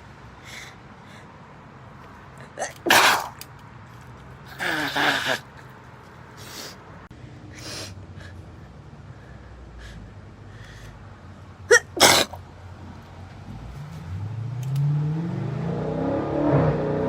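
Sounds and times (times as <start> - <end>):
woman sneezing: 2.4 - 3.4, 11.7 - 12.4
faint breaths and sniffs: 5.3 - 11.2.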